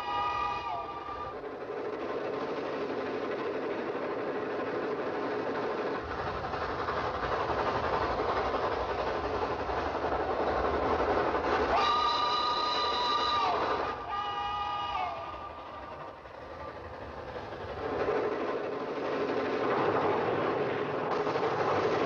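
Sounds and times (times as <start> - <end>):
cartoon train rumbling: 0.0 - 22.0
train whistle chord: 11.8 - 15.6.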